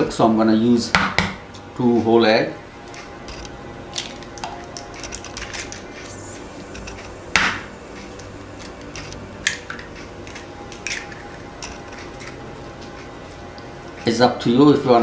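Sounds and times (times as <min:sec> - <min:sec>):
eggs cracking on bowl rim: 0:03.3 - 0:13.7.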